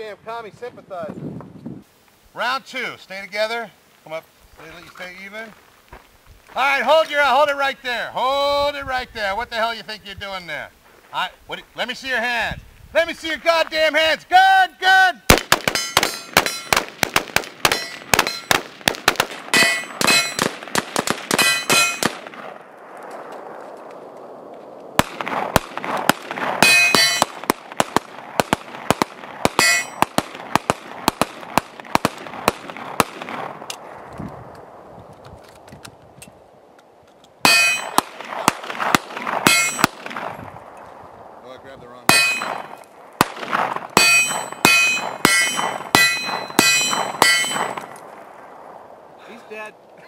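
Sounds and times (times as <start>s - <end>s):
rapid gunfire: 15.3s - 22.4s, 25.0s - 33.5s, 37.8s - 40.4s
steel targets ringing: 15.7s - 16.8s, 17.7s - 18.6s, 19.6s - 20.5s, 21.3s - 22.1s, 26.6s - 27.4s, 29.6s - 30.0s, 37.4s - 38.0s, 39.5s - 39.9s, 42.1s - 42.8s, 44.0s - 47.9s.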